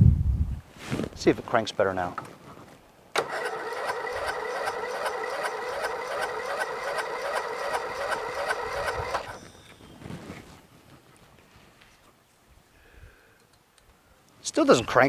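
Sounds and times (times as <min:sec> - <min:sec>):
engine cranking with electric starter: 0:03.2 - 0:09.5.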